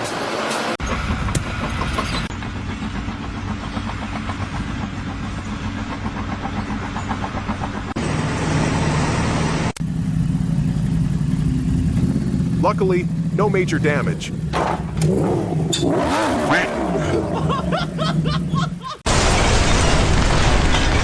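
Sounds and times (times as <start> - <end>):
vehicle engine running: 0.8 - 19.0.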